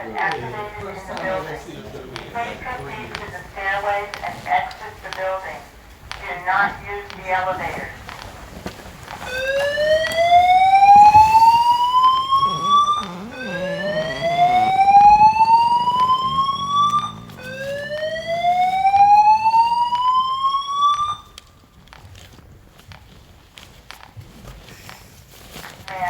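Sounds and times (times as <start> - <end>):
fire alarm whooping tone: 9.2 - 21.4.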